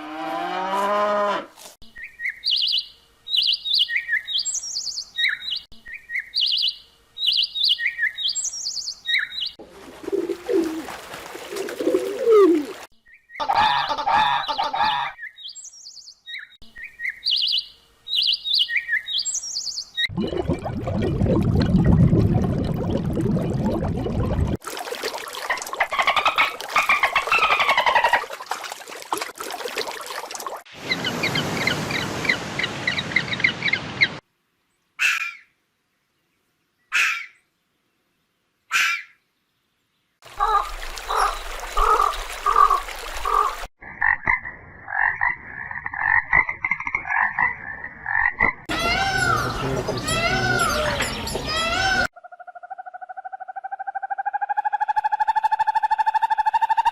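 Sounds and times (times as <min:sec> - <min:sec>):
frogs croaking: 0:40.4 - 0:54.7.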